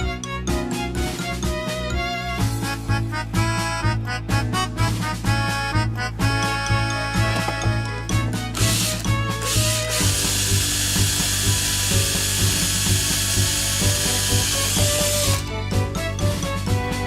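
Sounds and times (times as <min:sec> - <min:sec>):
background music with steady beat: 0:00.0 - 0:17.0
power tool grinding: 0:08.5 - 0:15.6.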